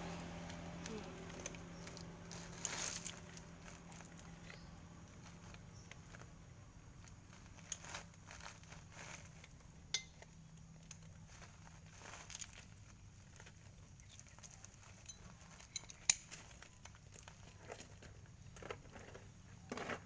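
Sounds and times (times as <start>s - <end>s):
faint low hum: 0.0s - 20.0s
metal tools clinking: 9.2s - 11.1s, 14.3s - 17.2s.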